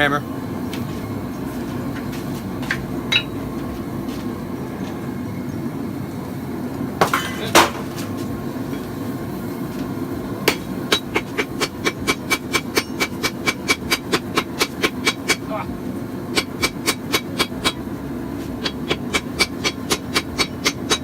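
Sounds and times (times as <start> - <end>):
hammer striking steel on anvil: 3.1 - 3.4, 10.4 - 15.5, 16.3 - 17.8, 18.6 - 21.0.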